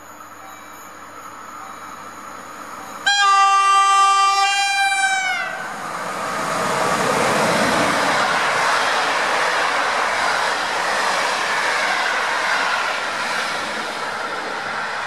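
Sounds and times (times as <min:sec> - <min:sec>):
train wheels on rails: 0:00.0 - 0:15.0
train horn blast: 0:03.0 - 0:05.6.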